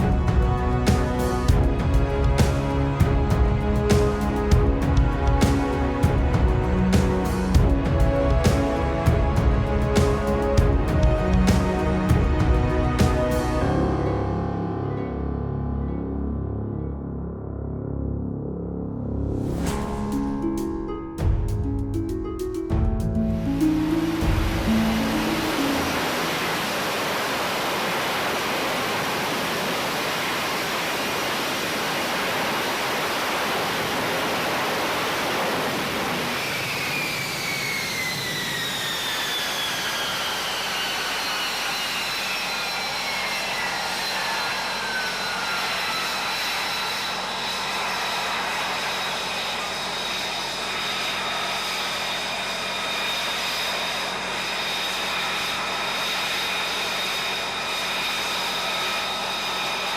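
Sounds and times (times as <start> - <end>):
steady high whines: 19.1 - 59.9
falling high whine: 19.2 - 59.9
jet engine roaring: 23.6 - 59.9.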